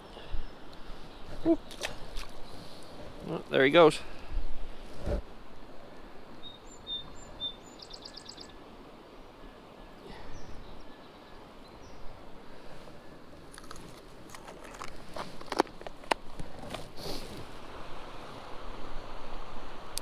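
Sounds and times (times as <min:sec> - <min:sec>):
river water flowing: 0:00.0 - 0:20.0
songbird chirping and trilling: 0:06.4 - 0:08.6.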